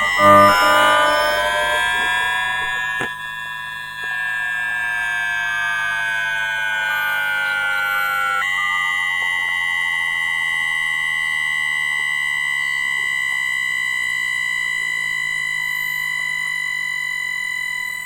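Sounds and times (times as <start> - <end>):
electronic whine of train inverter: 0.0 - 18.0.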